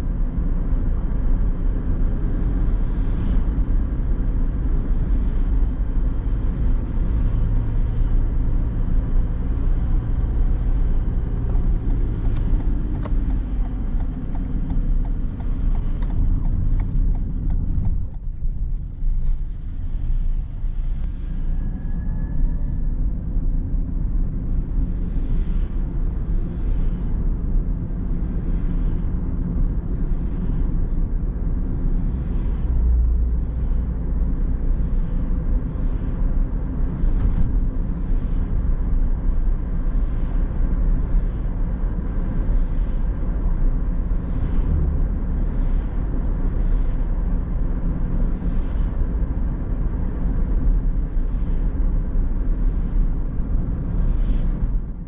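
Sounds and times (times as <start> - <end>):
car tyres and engine rumble: 0.0 - 55.0.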